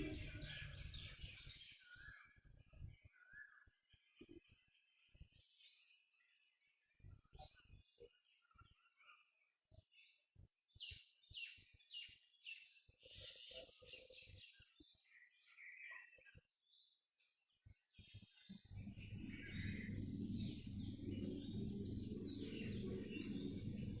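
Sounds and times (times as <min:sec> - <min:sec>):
steady low rumble: 0:00.0 - 0:01.0, 0:18.7 - 0:24.0
small birds chirping: 0:00.0 - 0:24.0.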